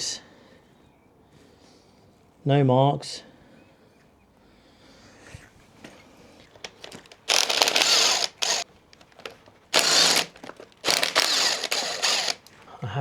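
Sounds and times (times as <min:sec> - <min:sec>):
small tool clicks: 0:06.6 - 0:12.5
ratchet wrench clicking: 0:06.7 - 0:12.5.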